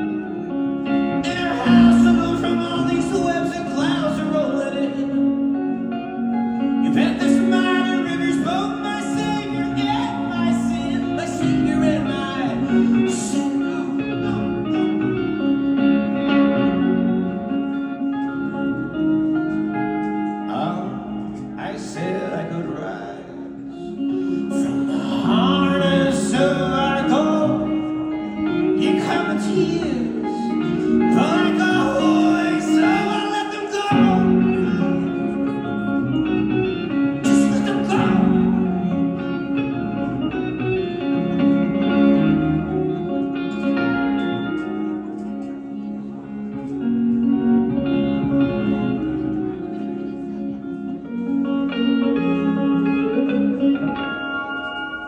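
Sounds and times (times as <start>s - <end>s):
guitar picking a folk melody: 0.0s - 55.0s
man singing: 0.9s - 5.8s, 6.8s - 16.6s, 20.4s - 41.1s.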